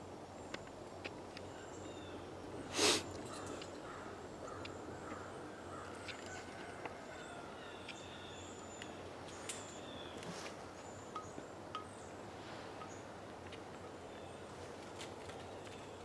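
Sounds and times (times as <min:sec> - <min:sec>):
faint birds chirping: 0:00.0 - 0:16.0
steady background hiss: 0:00.0 - 0:16.0.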